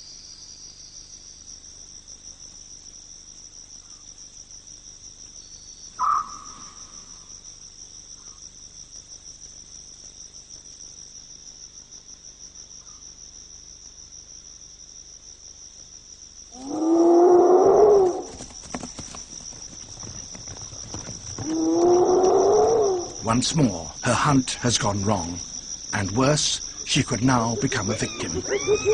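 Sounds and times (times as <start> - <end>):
crickets trilling: 0.0 - 28.9
loud drawn-out animal calls: 6.0 - 7.2, 16.6 - 18.5, 21.4 - 23.4, 26.2 - 28.9.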